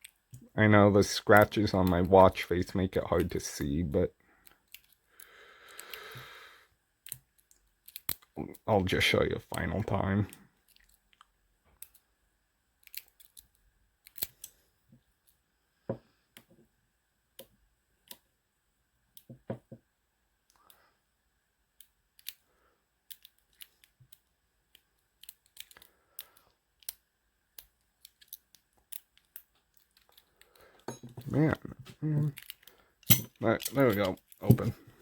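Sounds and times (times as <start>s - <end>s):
lock pick metallic clicks: 32.4s - 34.5s.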